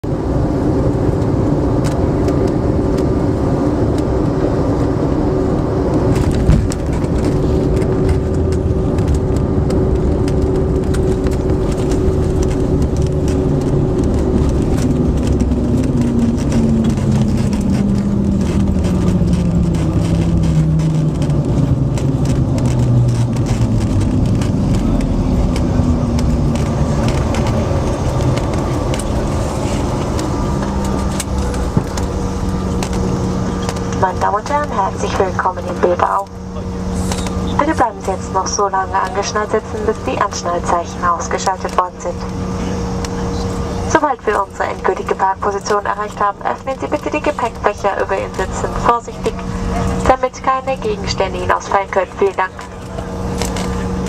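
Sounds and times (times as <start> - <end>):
airliner engines and airflow rumble: 0.0 - 54.0.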